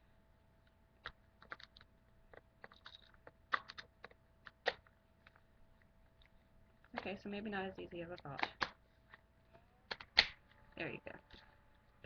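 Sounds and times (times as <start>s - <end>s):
plastic snaps: 1.0s - 5.4s, 8.2s - 9.2s, 9.9s - 10.5s.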